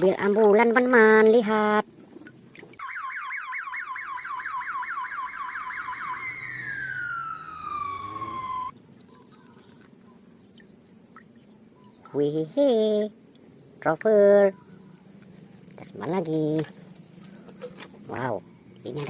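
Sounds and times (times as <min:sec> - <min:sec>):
toy electronic siren: 0:02.8 - 0:08.7.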